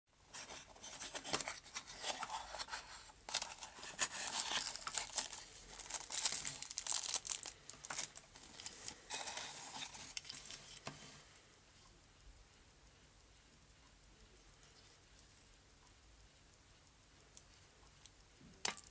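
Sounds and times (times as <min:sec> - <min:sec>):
packaging crinkling and tearing: 0:00.3 - 0:10.8.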